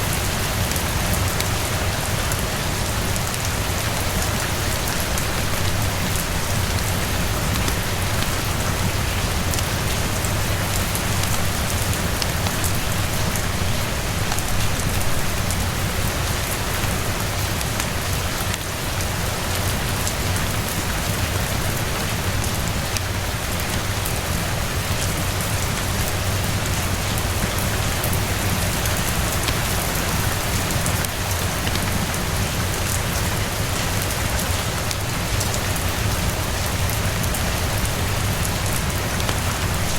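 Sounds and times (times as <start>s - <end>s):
rain falling on a roof: 0.0s - 39.9s
wood fire crackling: 27.3s - 34.1s, 36.8s - 39.9s.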